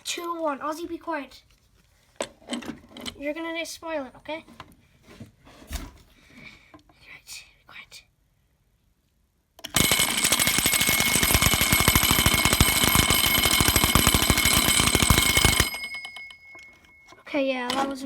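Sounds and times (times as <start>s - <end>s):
fire alarm bell ringing: 9.8s - 17.3s.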